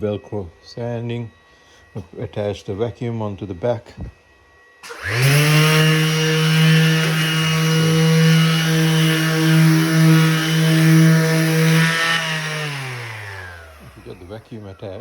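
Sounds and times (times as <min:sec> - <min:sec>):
orbital sander buzzing: 0:04.8 - 0:15.0.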